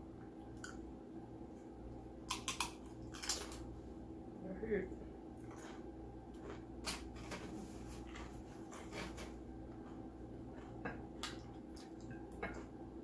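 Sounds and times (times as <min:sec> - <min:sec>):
faint steady hum: 0:00.0 - 0:13.0
chewing clicks and smacks: 0:02.3 - 0:03.6, 0:10.6 - 0:12.7.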